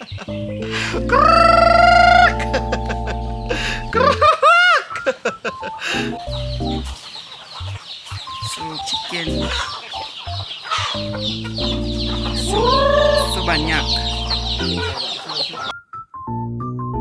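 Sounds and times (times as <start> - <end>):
chickens clucking: 0.0 - 15.7
background music: 0.0 - 17.0
rooster crowing: 1.1 - 2.6, 9.5 - 15.7.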